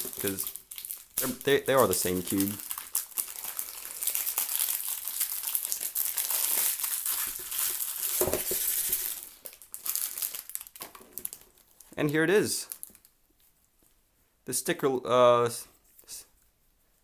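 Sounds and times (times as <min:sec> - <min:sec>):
plastic wrap crinkling: 0:00.0 - 0:13.5.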